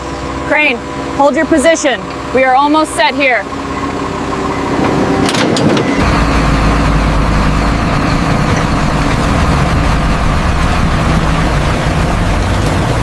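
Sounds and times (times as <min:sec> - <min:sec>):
heavy crane engine running: 0:00.0 - 0:13.0
deep low rumble: 0:05.6 - 0:13.0.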